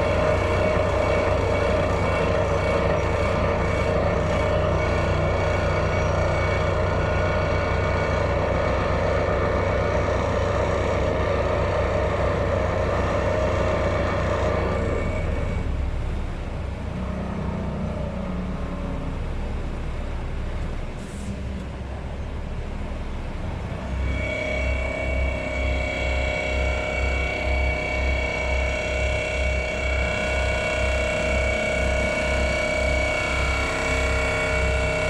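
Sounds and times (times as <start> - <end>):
pile driving machinery humming: 0.0 - 35.0.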